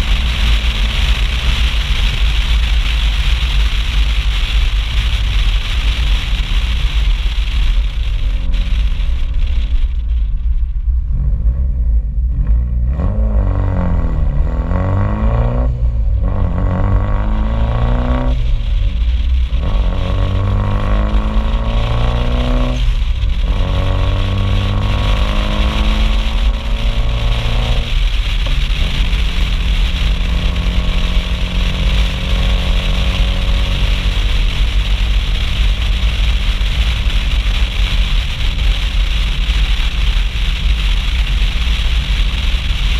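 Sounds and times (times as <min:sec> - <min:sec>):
car engine accelerating: 0:00.0 - 0:42.9
wind rumble on microphone: 0:00.0 - 0:42.9.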